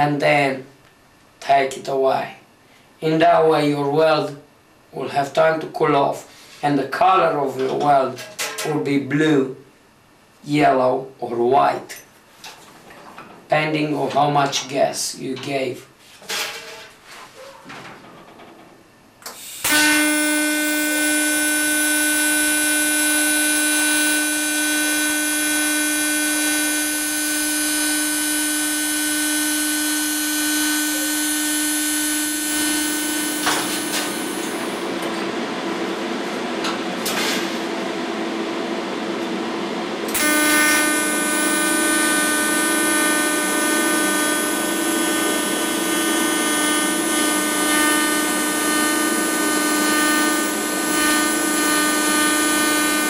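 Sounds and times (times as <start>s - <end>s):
welding arc buzzing whine: 18.2s - 53.0s.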